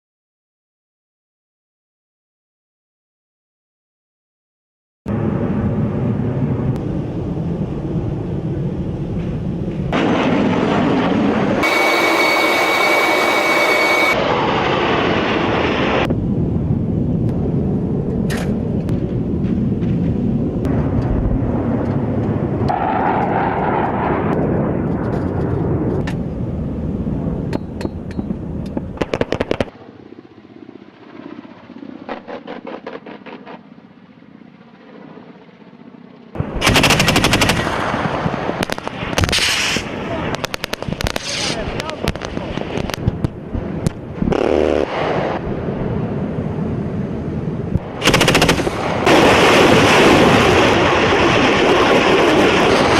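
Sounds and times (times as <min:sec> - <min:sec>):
automatic gunfire: 0:36.6 - 0:38.0, 0:48.0 - 0:49.3.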